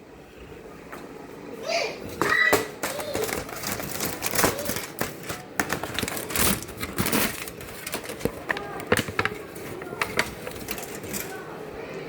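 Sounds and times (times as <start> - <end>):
clicks and knocks: 2.8 - 11.4.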